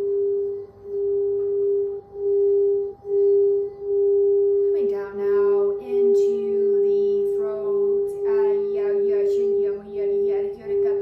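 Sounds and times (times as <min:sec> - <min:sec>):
singing bowl ringing: 0:00.0 - 0:11.0
woman singing wordless syllables: 0:04.6 - 0:11.0.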